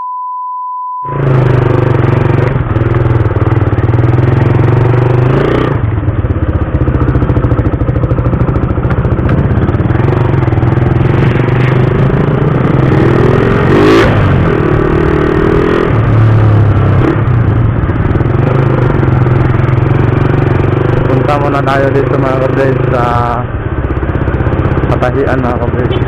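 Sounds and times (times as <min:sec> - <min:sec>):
steady high beep: 0:00.0 - 0:02.0
motorcycle engine running: 0:01.1 - 0:26.0.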